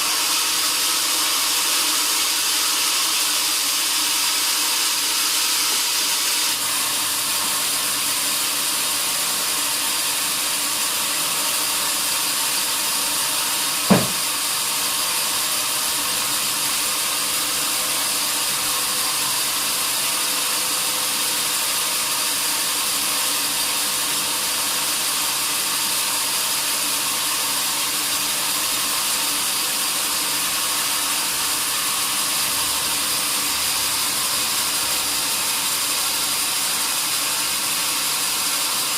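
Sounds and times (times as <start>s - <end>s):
sawmill saw cutting log: 0.0s - 38.9s
sharp knock: 13.9s - 14.3s.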